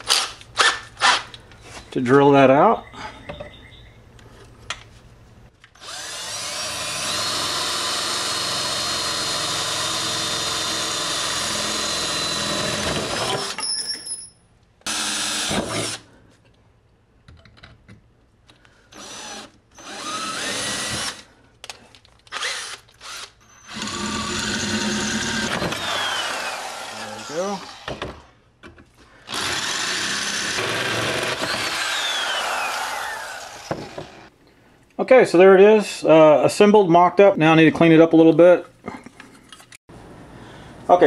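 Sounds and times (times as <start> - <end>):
power drill cutting with hole saw: 5.8 - 13.7, 14.9 - 16.0, 18.9 - 21.3, 22.3 - 28.1, 29.3 - 34.3.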